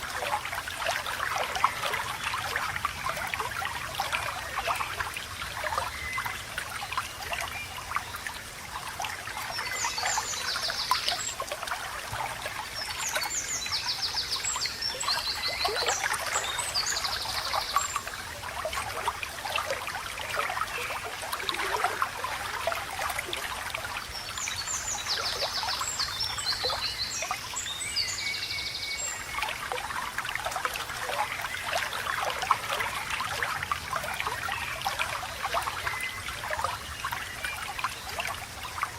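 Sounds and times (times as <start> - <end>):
small stream babbling: 0.0 - 38.9
bird singing trilled phrases: 9.4 - 11.5.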